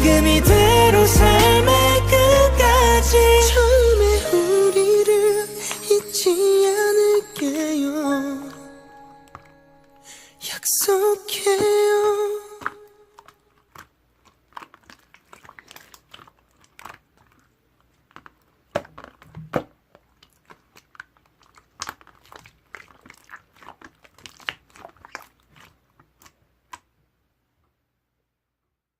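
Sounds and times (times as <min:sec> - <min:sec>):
crinkly rustles: 0:12.6 - 0:26.8.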